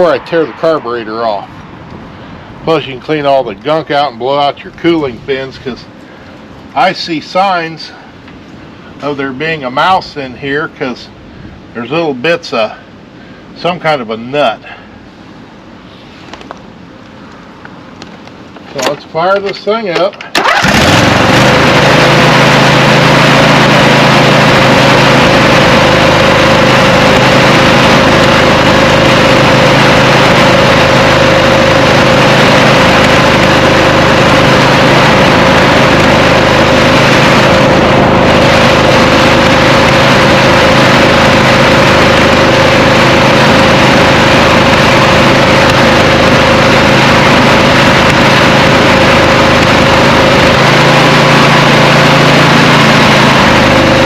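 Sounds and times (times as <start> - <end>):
misfiring mower engine: 18.0 - 54.0.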